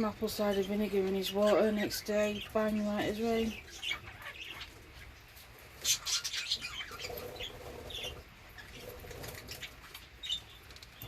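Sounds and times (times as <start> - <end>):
budgerigars chirping: 0.0 - 11.0.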